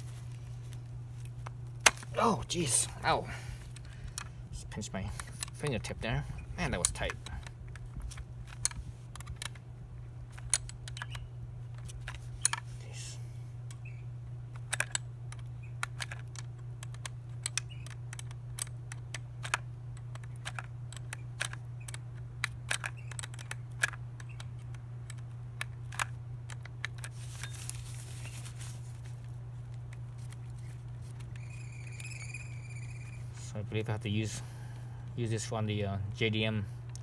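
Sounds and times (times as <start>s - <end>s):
steady low hum: 0.0s - 37.0s
cricket chirping: 26.2s - 35.5s.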